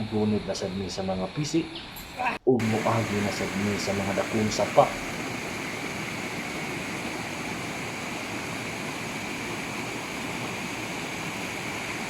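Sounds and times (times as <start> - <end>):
mountain river rushing: 2.6 - 12.0.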